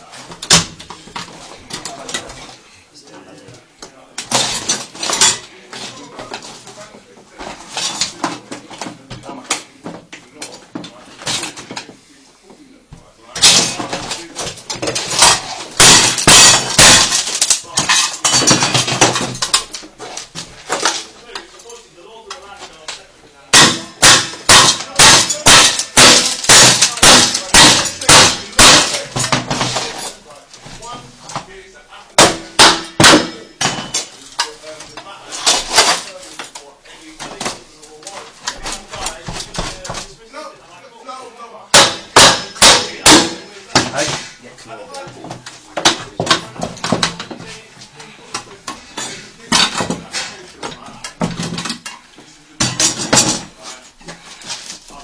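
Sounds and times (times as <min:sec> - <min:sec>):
metal objects clattering: 0:04.2 - 0:06.8, 0:07.4 - 0:09.6, 0:13.4 - 0:21.8, 0:23.5 - 0:31.5, 0:32.2 - 0:36.6, 0:48.8 - 0:55.0
hammer blows ringing: 0:15.2 - 0:19.1, 0:23.5 - 0:29.8, 0:32.2 - 0:34.1, 0:41.7 - 0:43.9.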